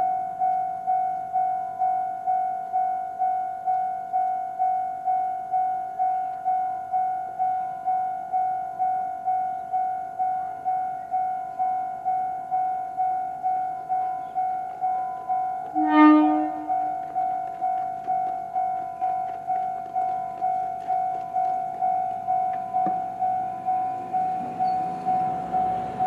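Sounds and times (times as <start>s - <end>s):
railway crossing alarm ringing: 0.0s - 26.0s
train horn blast: 15.7s - 17.0s.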